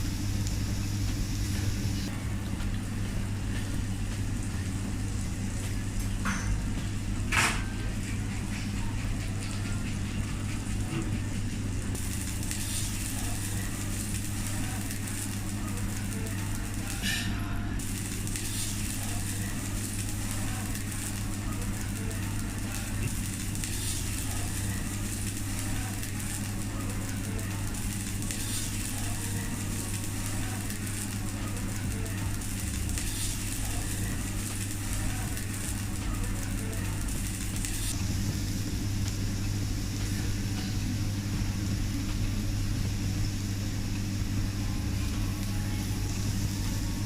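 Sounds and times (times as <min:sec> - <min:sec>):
low hum: 0:00.0 - 0:08.2
food sizzling on a griddle: 0:12.0 - 0:47.0.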